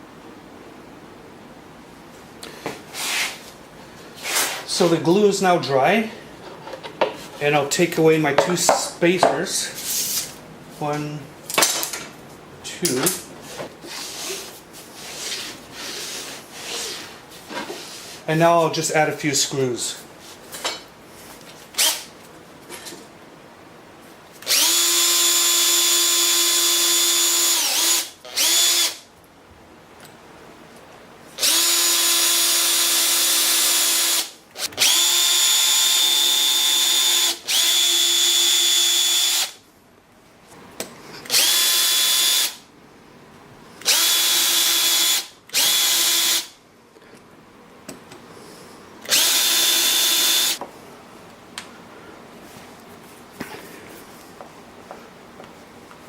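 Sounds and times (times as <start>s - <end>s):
drill driving screws into wood: 21.8s - 22.1s, 24.4s - 29.0s, 31.4s - 39.6s, 41.3s - 42.6s, 43.8s - 46.6s, 49.0s - 50.6s.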